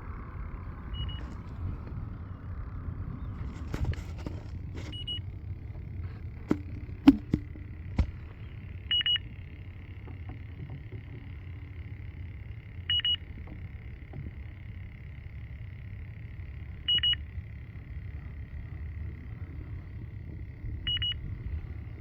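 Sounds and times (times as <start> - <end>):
low steady hum: 0.0 - 22.0
sharp knocks: 6.5 - 8.3.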